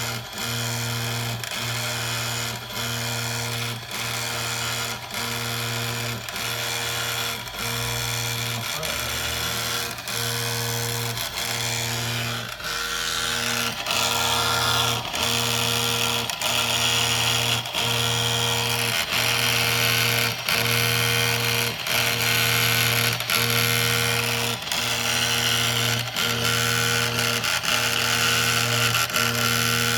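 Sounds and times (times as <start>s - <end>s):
engraving machine motors humming: 0.1s - 29.9s
tool scratching on stone: 3.7s - 22.2s.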